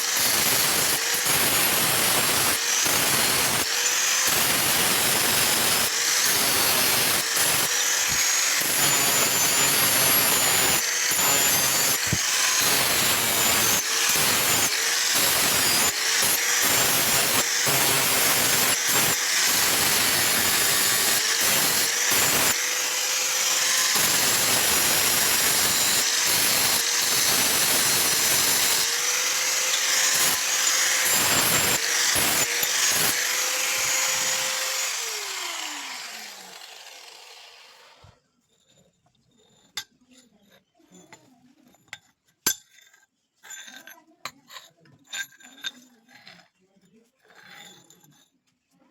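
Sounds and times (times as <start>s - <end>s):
grinding steel hiss: 0.0s - 38.0s
electric grinder motor whine: 0.0s - 38.1s.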